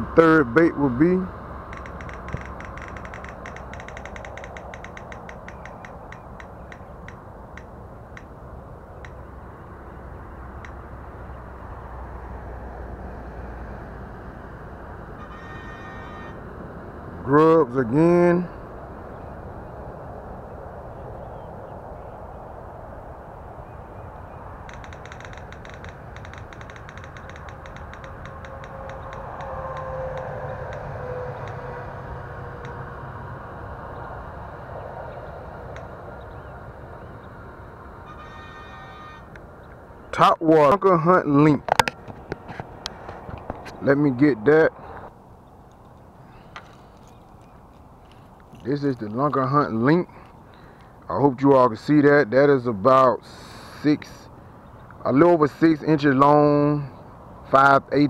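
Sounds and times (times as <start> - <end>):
prize wheel pointer clicking: 1.7 - 8.3, 24.7 - 30.8.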